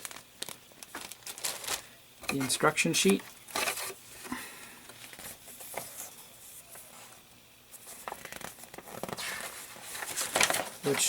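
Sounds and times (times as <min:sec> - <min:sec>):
paper rustling and crinkling: 0:00.0 - 0:11.0.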